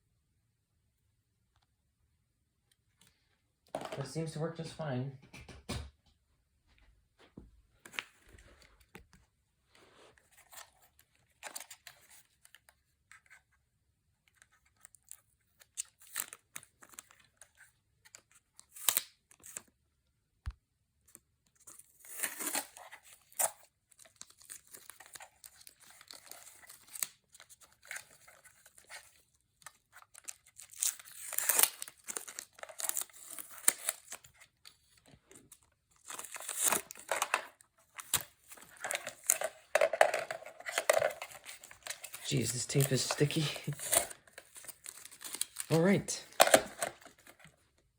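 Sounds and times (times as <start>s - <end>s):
tape crinkling: 22.1s - 47.6s.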